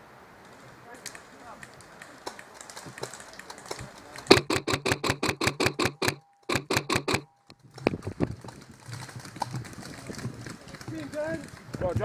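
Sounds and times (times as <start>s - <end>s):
airsoft gun firing bursts: 4.3s - 7.3s.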